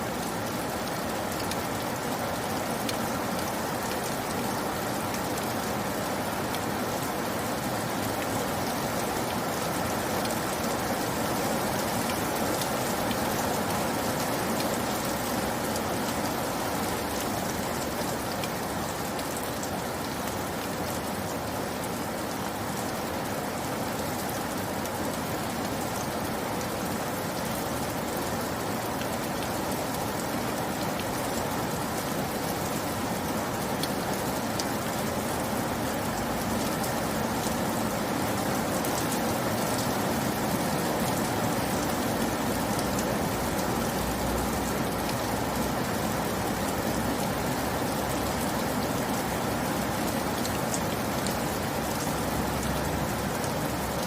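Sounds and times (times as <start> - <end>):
steady rain patter: 0.0 - 54.0.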